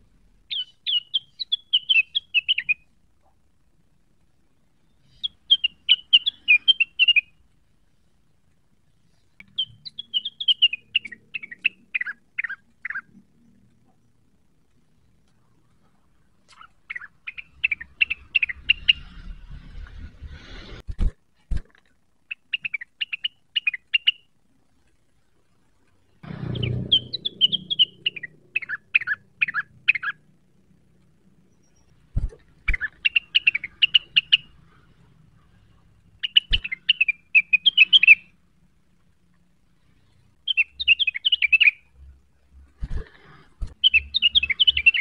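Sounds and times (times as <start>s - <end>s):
small bird singing rapid chirps: 0.4s - 2.9s, 4.8s - 7.4s, 9.4s - 13.6s, 16.5s - 19.6s, 22.3s - 24.4s, 26.2s - 30.4s, 31.4s - 38.4s, 39.8s - 42.1s, 43.6s - 45.0s
low rumble: 26.2s - 28.5s.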